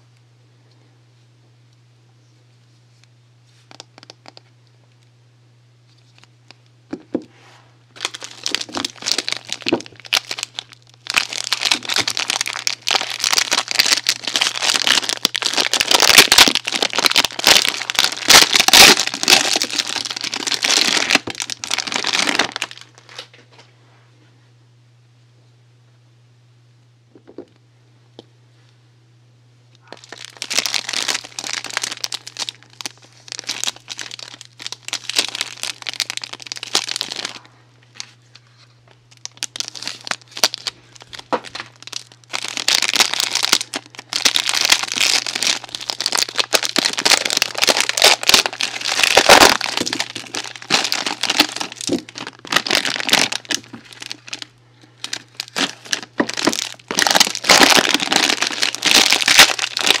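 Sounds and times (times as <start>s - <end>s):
faint low hum: 0.0s - 60.0s
soap packaging crinkling: 8.0s - 23.2s, 29.8s - 38.2s, 39.1s - 60.0s.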